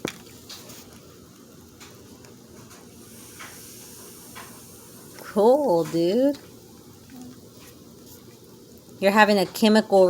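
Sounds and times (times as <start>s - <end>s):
fizzing bubbles popping: 3.0s - 6.6s.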